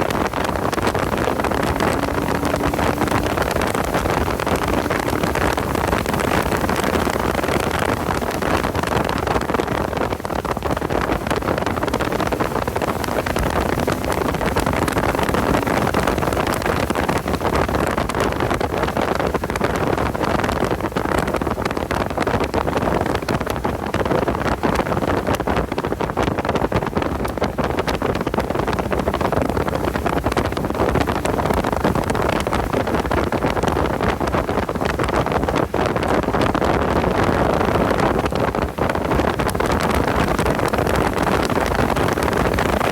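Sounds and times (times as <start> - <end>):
car engine running hard: 0.0 - 23.6, 27.1 - 42.9
wind buffeting microphone: 0.0 - 42.9.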